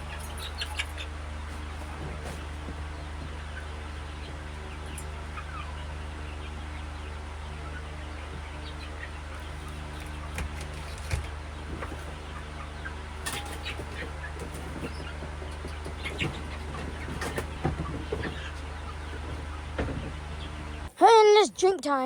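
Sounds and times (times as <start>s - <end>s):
sharp knocks and rustles: 0.0s - 3.6s, 9.4s - 12.4s, 13.2s - 20.9s
chickens clucking: 0.0s - 20.9s.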